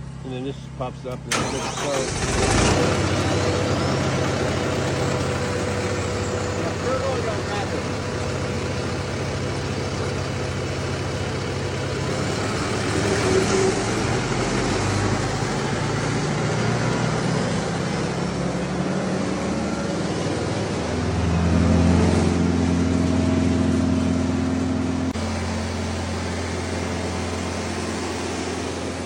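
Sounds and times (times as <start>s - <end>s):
wood chipper engine running: 1.0s - 29.0s.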